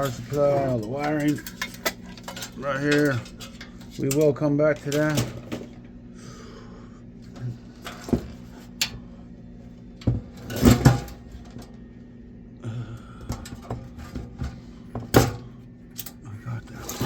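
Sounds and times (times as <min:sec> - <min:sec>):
metal computer case knocks and clanks: 0:10.0 - 0:11.6, 0:13.3 - 0:15.4.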